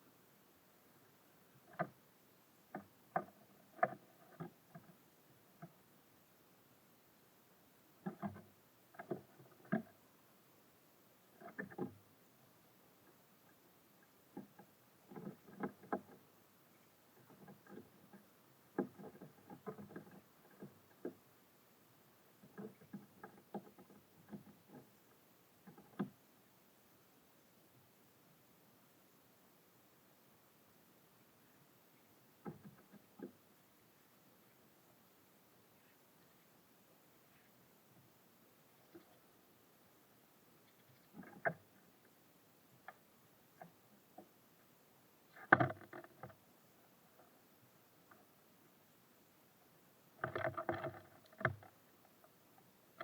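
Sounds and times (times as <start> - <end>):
birds pecking on wooden feeder: 2.7 - 5.8, 8.0 - 10.0, 13.0 - 21.3, 22.2 - 26.2, 32.2 - 33.4, 40.6 - 44.4, 45.3 - 46.4, 50.2 - 52.3.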